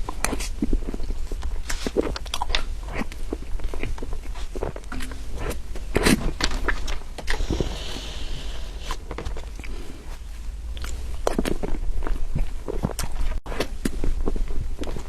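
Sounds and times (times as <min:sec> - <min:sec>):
person chewing cake: 0:00.0 - 0:15.0
soft hiss: 0:03.2 - 0:11.6.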